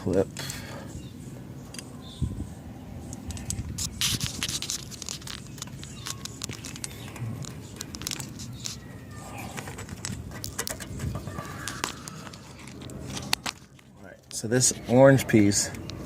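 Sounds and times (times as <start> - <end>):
plastic connector clicks and scrapes: 3.1 - 8.9, 9.6 - 13.8.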